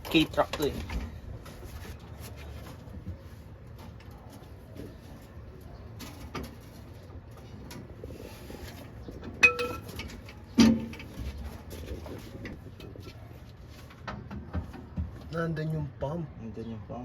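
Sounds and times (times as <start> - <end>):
metal clanks and knocks: 9.2 - 13.1
ringing metal clank: 9.4 - 10.8.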